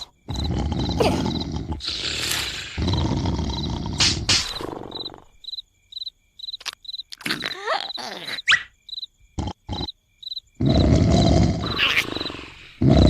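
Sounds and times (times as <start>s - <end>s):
sliding cartoon vocal noises: 0.0s - 5.0s, 6.6s - 8.7s, 10.6s - 13.0s
cartoon snoring: 0.0s - 5.4s, 9.4s - 9.9s, 10.6s - 13.0s
crickets chirping: 0.0s - 13.0s.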